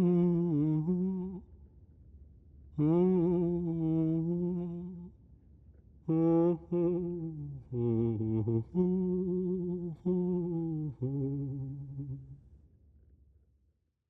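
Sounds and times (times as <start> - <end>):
low voice humming: 0.0 - 1.4, 2.8 - 5.1, 6.1 - 12.4.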